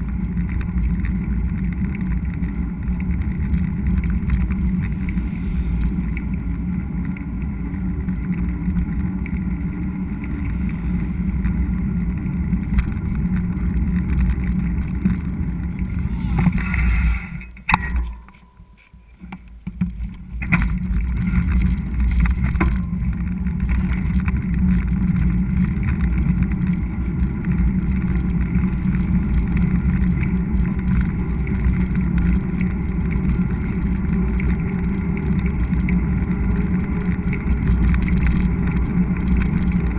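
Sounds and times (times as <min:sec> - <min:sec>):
wind buffeting microphone: 0:00.0 - 0:18.8
bike riding noise: 0:00.0 - 0:39.9.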